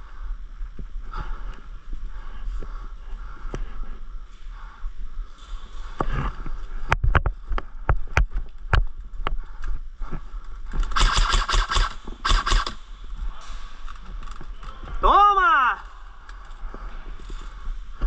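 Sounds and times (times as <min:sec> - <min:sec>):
airsoft gun full-auto bursts: 0:10.9 - 0:12.8
airsoft gun single shots: 0:11.0 - 0:12.8.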